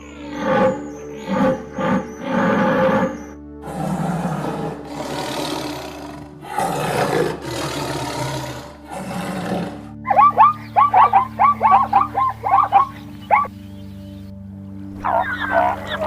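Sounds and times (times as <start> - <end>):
large animal roaring: 0.0 - 10.3.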